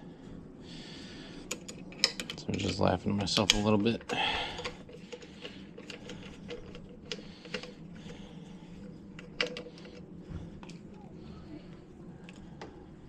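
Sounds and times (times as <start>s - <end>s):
steady low hum: 0.0s - 13.0s
hand tools and bolts clicking: 1.5s - 7.8s.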